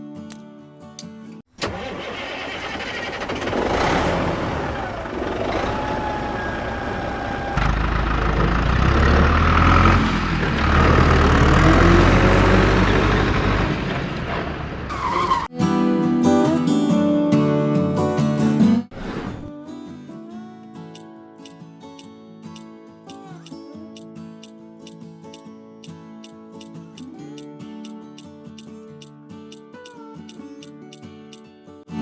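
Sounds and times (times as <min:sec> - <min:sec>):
engine starting and running: 0:01.5 - 0:15.5.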